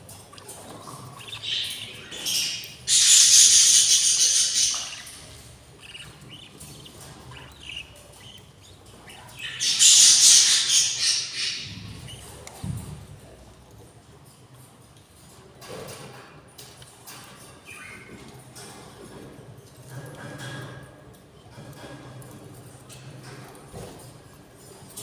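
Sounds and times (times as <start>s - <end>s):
budgerigar chicks begging calls: 0.8s - 12.4s
soft chirps: 0.9s - 12.3s.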